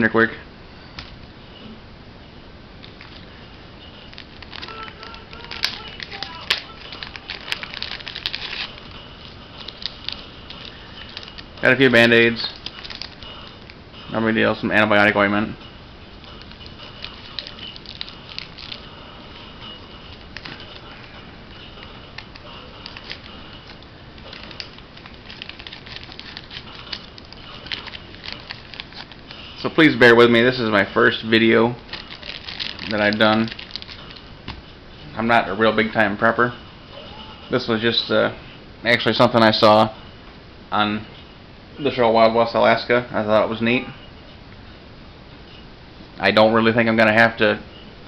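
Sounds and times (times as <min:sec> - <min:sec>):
plastic packets crinkling: 0:02.8 - 0:13.8, 0:16.2 - 0:18.9, 0:19.7 - 0:34.3.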